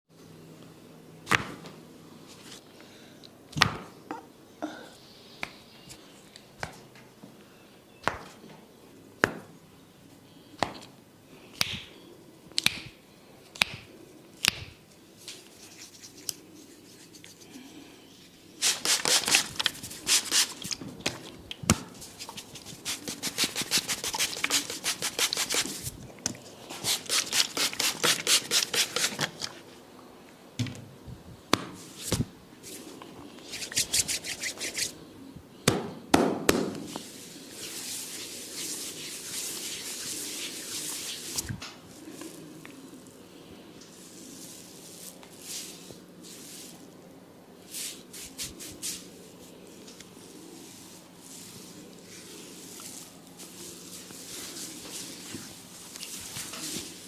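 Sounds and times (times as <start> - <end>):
rubbing and tapping strokes: 14.4 - 17.5, 18.6 - 21.2, 22.0 - 26.0, 26.7 - 29.5, 33.4 - 35.0, 36.9 - 42.5.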